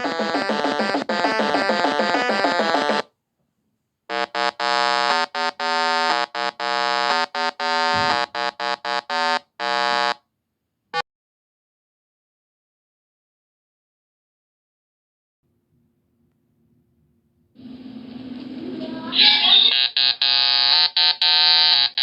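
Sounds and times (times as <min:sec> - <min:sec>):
synthesizer music: 0:00.0 - 0:03.0
stuttering electronic buzzing tone: 0:04.1 - 0:10.2, 0:19.2 - 0:22.0.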